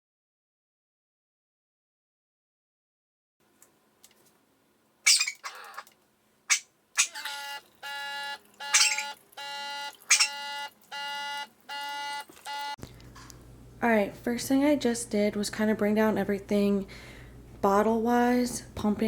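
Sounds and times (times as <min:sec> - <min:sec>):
appliance beeping: 0:07.0 - 0:12.8.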